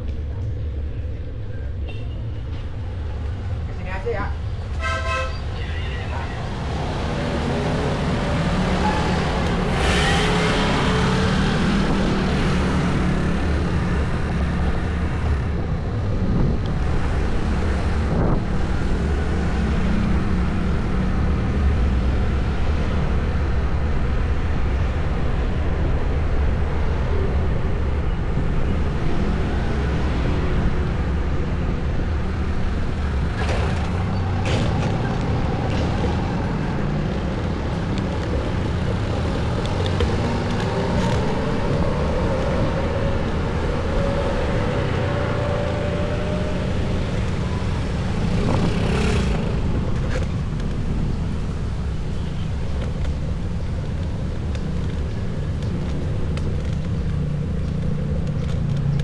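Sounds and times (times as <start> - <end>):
motor traffic passing: 0.1 - 22.8, 27.3 - 59.0
wind buffeting microphone: 10.6 - 21.2, 27.3 - 59.0.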